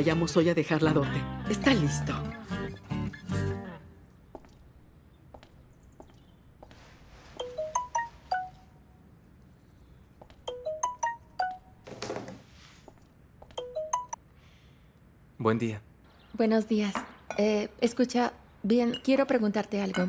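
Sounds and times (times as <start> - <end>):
soft rustle: 6.6 - 10.2, 12.2 - 13.2
phone ringtone chiming melody: 7.4 - 8.7, 10.5 - 11.8, 13.6 - 14.2.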